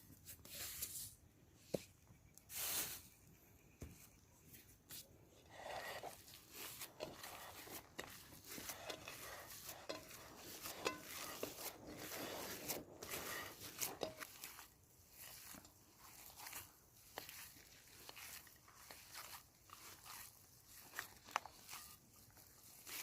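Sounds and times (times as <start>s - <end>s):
food crunching and rustling: 5.2s - 23.0s.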